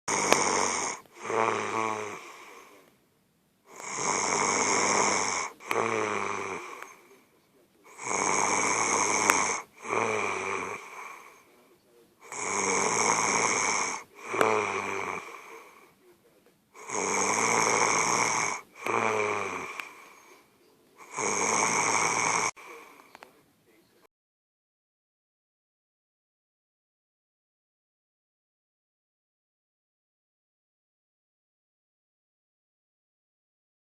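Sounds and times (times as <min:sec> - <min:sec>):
person snoring loudly: 0:00.1 - 0:02.8, 0:03.7 - 0:07.2, 0:07.9 - 0:11.5, 0:12.2 - 0:15.8, 0:16.8 - 0:20.4, 0:21.0 - 0:23.1.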